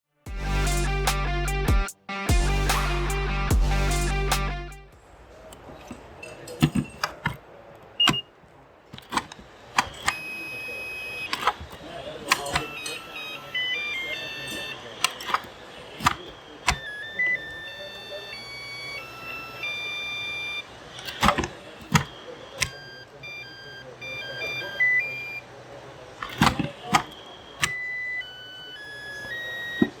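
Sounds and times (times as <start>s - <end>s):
charger beeping: 6.6s - 8.4s, 9.0s - 30.0s
plastic clicks and knocks: 9.0s - 10.2s, 15.0s - 16.9s, 21.0s - 22.8s, 26.2s - 27.8s.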